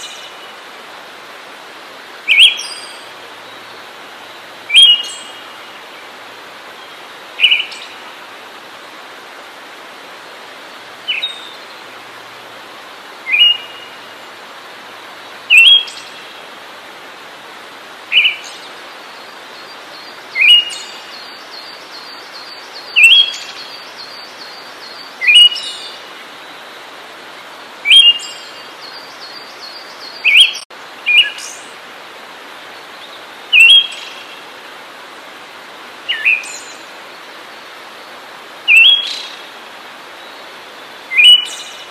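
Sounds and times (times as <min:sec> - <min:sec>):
steady hiss: 0:00.0 - 0:41.9
songbird sharp call: 0:04.7 - 0:05.3.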